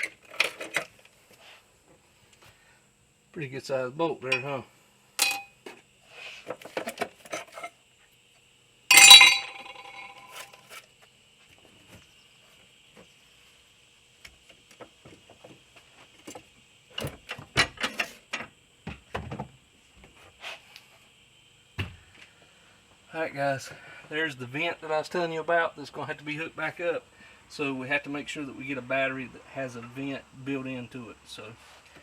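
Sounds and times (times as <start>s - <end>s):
metal tools clinking: 5.2s - 5.5s, 8.9s - 10.6s
ringing metallic clang: 5.2s - 5.5s, 8.9s - 10.4s.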